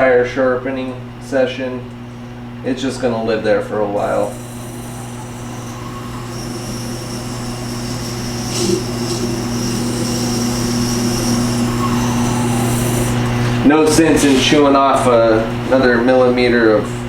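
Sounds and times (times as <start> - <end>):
sharpener motor humming: 3.9 - 14.4.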